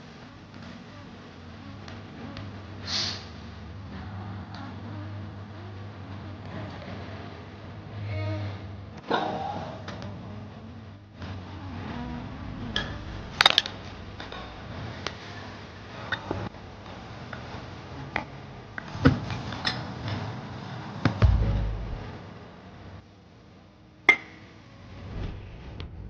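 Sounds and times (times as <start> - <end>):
heavy thud: 21.2 - 22.1
loud knocks: 21.2 - 22.1.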